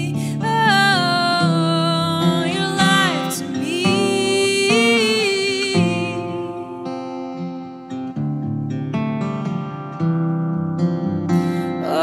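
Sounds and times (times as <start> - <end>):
woman singing long sliding notes: 0.0 - 7.5, 11.7 - 12.0.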